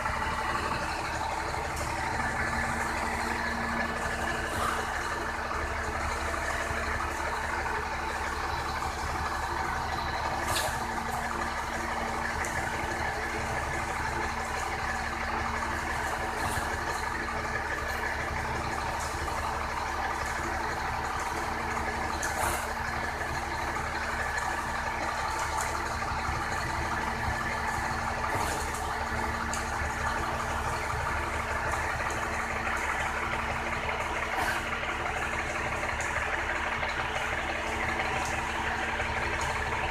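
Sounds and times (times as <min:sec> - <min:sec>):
truck engine running: 0:00.0 - 0:39.9.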